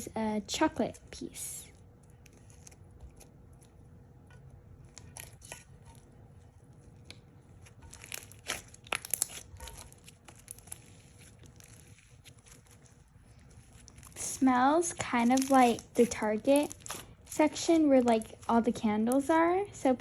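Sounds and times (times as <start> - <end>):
slime crackling and popping: 6.8 - 19.3.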